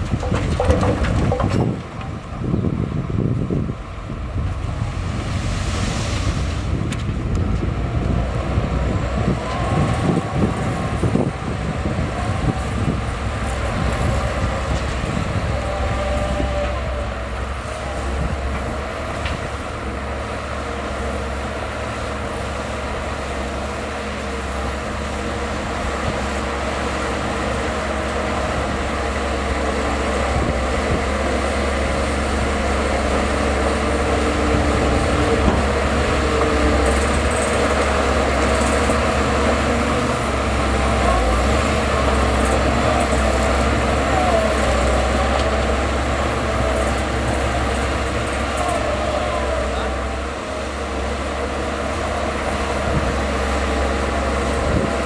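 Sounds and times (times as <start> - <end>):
clatter: 0.0 - 2.2
bulldozer diesel engine rumbling: 0.0 - 55.0.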